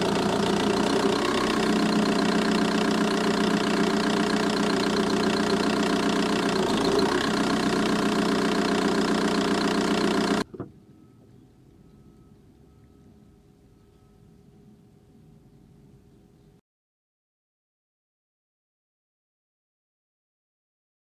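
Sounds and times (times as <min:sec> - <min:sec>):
diesel engine idling: 0:00.0 - 0:10.5
rapid engine ticking: 0:00.0 - 0:10.5.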